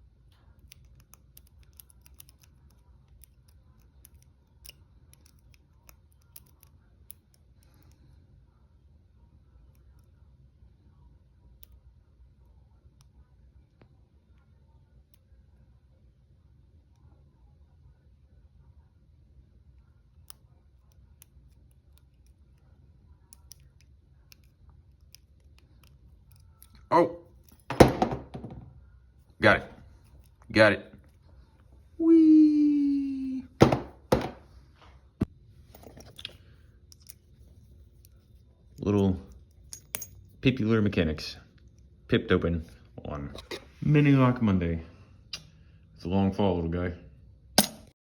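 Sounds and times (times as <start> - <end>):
low steady hum: 0.0 - 48.0
lock pick clicking in padlock: 0.6 - 7.9.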